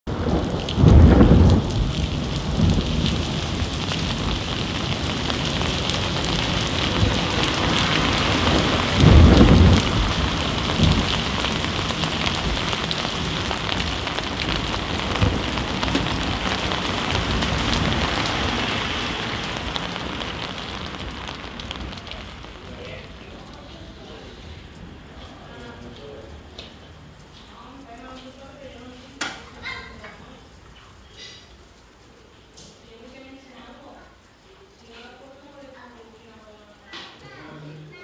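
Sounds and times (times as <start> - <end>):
thunder rumbles: 0.1 - 27.2
rain hissing: 0.1 - 38.0.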